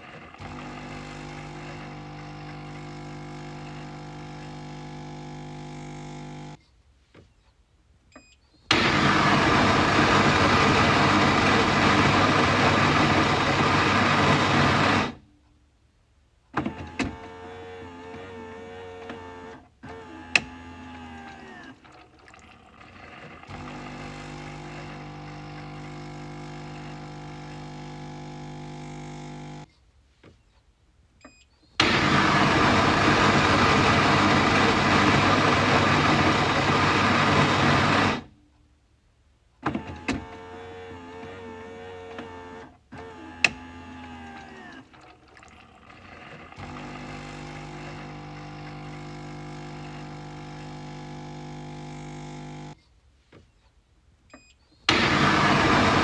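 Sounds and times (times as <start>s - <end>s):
coffee machine humming: 0.0s - 6.6s, 8.7s - 15.2s, 21.0s - 29.6s, 31.8s - 38.3s, 44.1s - 52.8s, 54.9s - 56.0s
coffee machine rushing noise: 8.7s - 15.2s, 31.8s - 38.3s, 45.0s - 52.0s, 54.9s - 56.0s.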